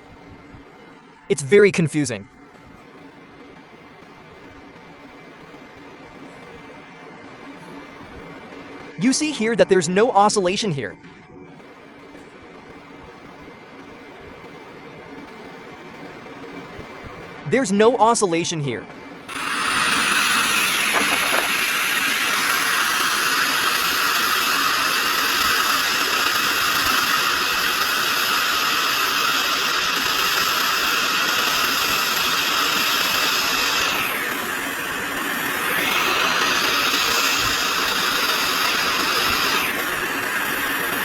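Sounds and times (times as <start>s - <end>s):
hot air blower hissing: 16.4s - 41.0s.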